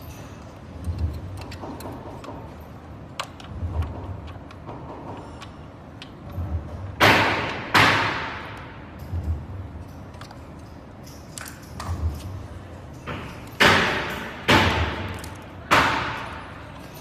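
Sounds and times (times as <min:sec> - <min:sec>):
sharp ringing knocks: 0:13.0 - 0:15.1.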